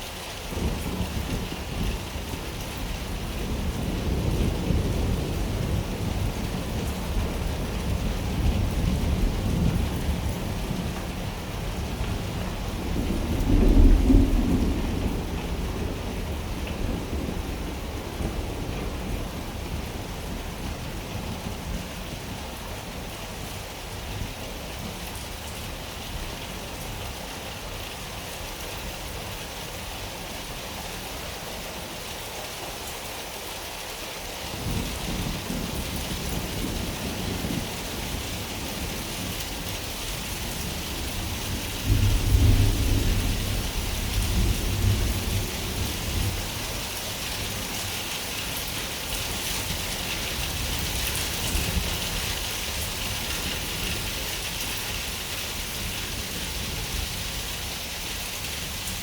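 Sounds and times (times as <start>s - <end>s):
steady rain: 0.0s - 59.0s
thunder rumble: 3.4s - 20.8s, 40.4s - 47.5s.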